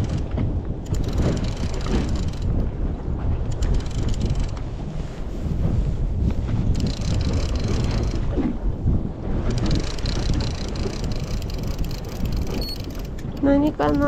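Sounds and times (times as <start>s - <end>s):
wind buffeting microphone: 0.0s - 14.0s
light rapid ticks: 0.8s - 2.6s, 9.5s - 14.0s.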